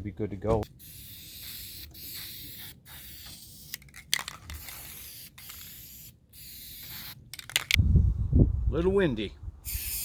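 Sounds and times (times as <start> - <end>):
spray-paint can hissing: 0.8 - 3.8, 4.5 - 7.2, 9.7 - 10.0.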